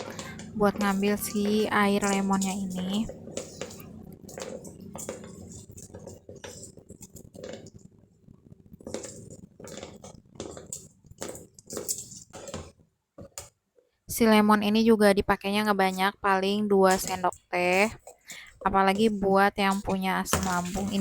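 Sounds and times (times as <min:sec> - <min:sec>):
utensils and dishes clinking: 0:00.0 - 0:06.8, 0:19.8 - 0:21.0.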